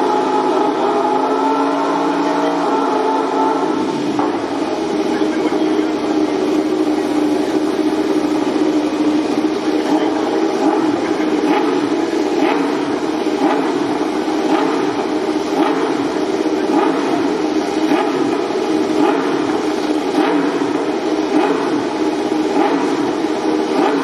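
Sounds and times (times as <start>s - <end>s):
racing motorcycle engine running: 0.0s - 24.0s.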